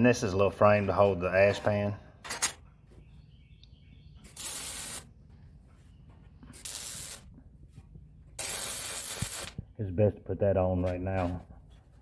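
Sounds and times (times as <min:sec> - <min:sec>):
arc welding crackling hiss: 0:04.3 - 0:05.1, 0:06.6 - 0:07.3, 0:08.4 - 0:09.6.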